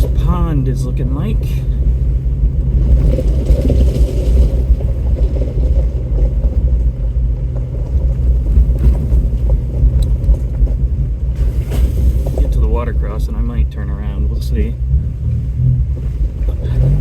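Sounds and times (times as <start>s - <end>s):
vehicle engine low rumble: 0.0s - 17.0s
small knocks and rattles: 2.5s - 12.8s.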